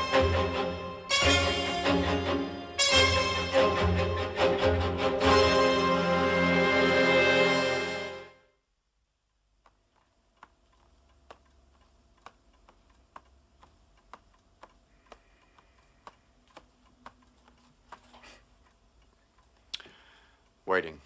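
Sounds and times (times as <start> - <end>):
clock ticking: 9.6 - 21.0.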